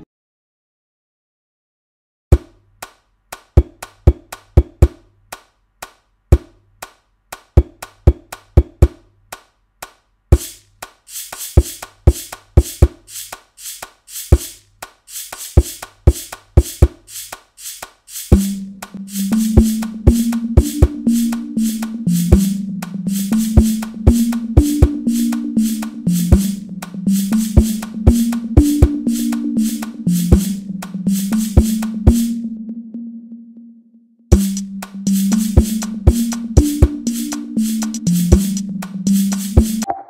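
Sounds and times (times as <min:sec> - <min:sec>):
shaker-like hits: 0:09.8 - 0:32.4, 0:34.3 - 0:39.8
low drum beat: 0:11.4 - 0:13.4, 0:14.2 - 0:14.6, 0:15.2 - 0:17.3, 0:18.2 - 0:32.4, 0:34.3 - 0:39.8
sharp percussion knocks: 0:15.3 - 0:17.1, 0:18.2 - 0:32.4, 0:34.3 - 0:39.8
pitched note: 0:18.4 - 0:40.0.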